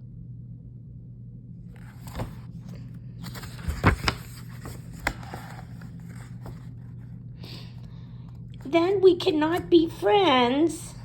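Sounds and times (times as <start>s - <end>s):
steady low hum: 0.0s - 11.0s
paper rustling: 1.7s - 7.1s.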